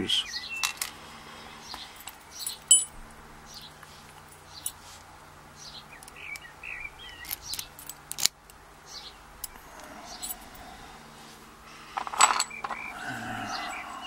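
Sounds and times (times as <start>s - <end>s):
metallic clicks and clinks of tools: 0.6s - 1.0s, 2.0s - 3.0s, 7.2s - 8.6s, 12.0s - 12.9s
faint bird chirps: 5.6s - 7.8s, 12.5s - 14.0s.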